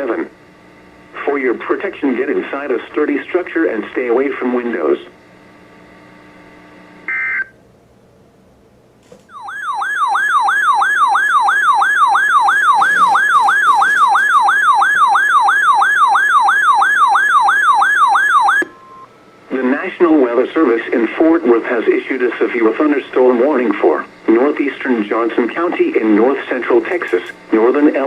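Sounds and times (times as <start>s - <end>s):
faint radio hiss: 0.0s - 7.1s, 18.7s - 28.0s
electronic alert siren sweeping: 9.3s - 19.1s.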